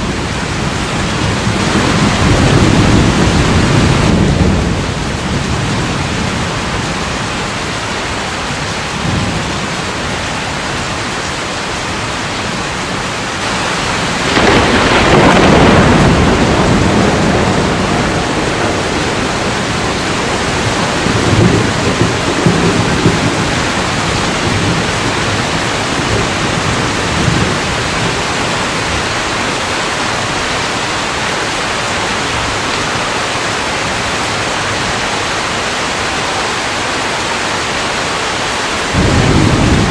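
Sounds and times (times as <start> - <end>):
thunder rumbling: 0.0 - 7.7, 13.4 - 29.6, 38.9 - 39.9
heavy rain: 0.0 - 39.9.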